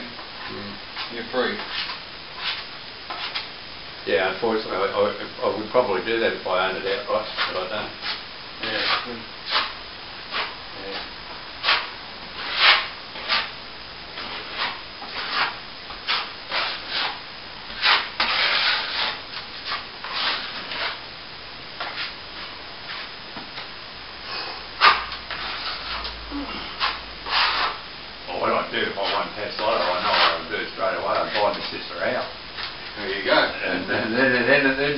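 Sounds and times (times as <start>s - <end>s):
hand sanding plaster rasping: 7.3s - 10.6s, 11.6s - 13.5s, 14.2s - 21.0s, 24.8s - 26.1s, 26.8s - 27.8s, 28.9s - 30.5s.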